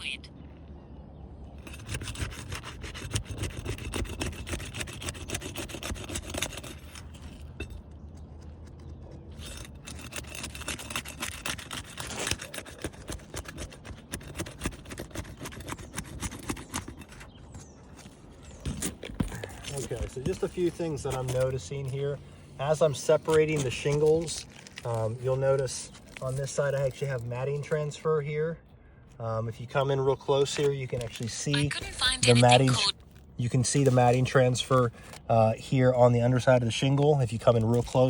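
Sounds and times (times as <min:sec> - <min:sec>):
roof shingles scraping loose: 0:09.3 - 0:21.9.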